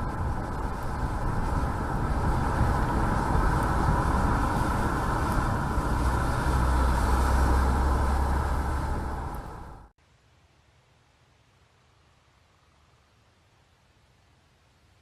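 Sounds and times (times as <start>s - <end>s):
car engine and road noise: 0.0s - 10.0s.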